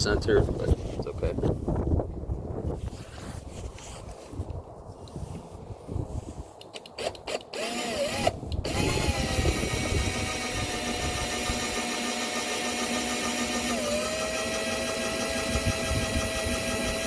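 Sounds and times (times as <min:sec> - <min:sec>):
drill clicks: 0:06.6 - 0:17.0
electric drill whining: 0:07.0 - 0:17.0.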